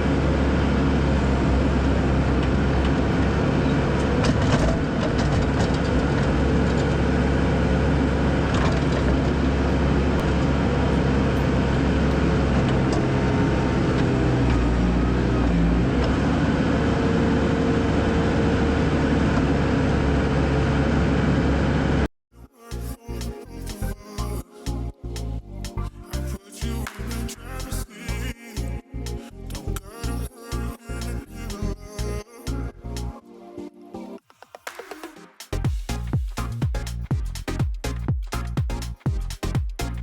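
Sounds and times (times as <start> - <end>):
diesel engine under load: 0.0 - 22.1.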